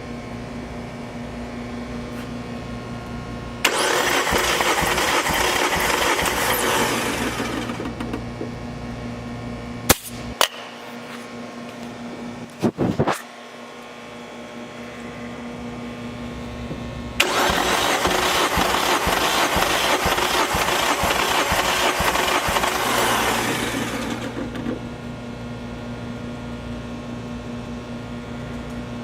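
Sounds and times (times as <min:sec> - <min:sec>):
steady hum: 0:00.0 - 0:29.0
starter motor cranking engine: 0:03.6 - 0:08.6, 0:17.2 - 0:24.9.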